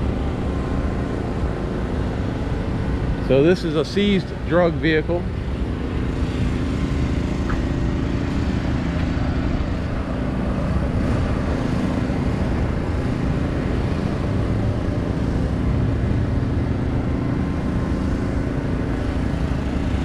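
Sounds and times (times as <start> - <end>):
vehicle engine idling: 0.0 - 20.0.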